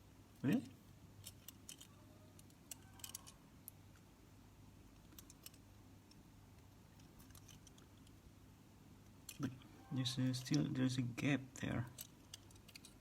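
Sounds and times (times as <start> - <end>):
faint low hum: 0.0 - 13.0
plastic parts clicking: 1.2 - 3.8, 5.0 - 6.2, 6.9 - 8.2, 11.9 - 13.0.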